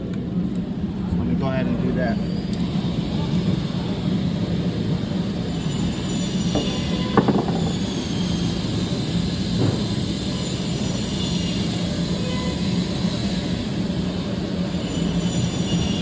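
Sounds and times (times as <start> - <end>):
faint knock: 6.6 - 7.8.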